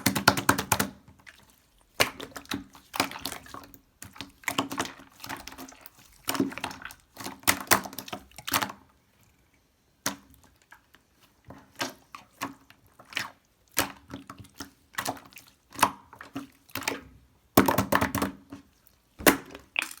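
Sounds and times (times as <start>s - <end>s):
slime squished by hand: 11.7s - 20.0s.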